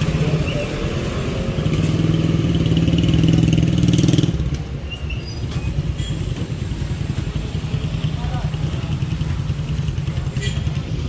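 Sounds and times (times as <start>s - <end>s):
street traffic rumble: 0.0s - 11.0s
vehicle engine running: 6.3s - 11.0s.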